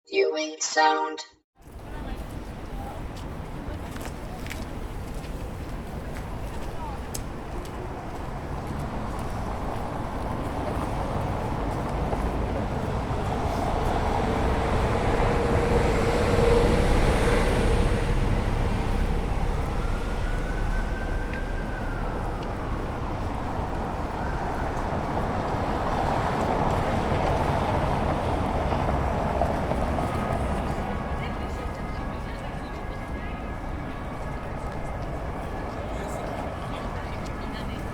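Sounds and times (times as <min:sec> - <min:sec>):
road traffic rumble: 0:03.2 - 0:37.9.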